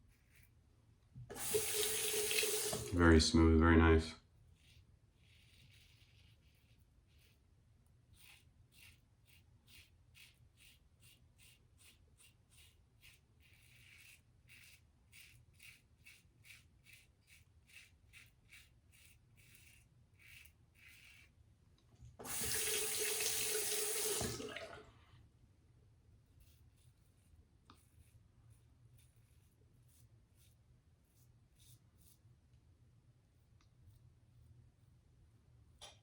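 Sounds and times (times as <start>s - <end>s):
tap running: 1.2s - 3.0s, 22.2s - 24.8s
razor scraping stubble: 4.6s - 21.4s.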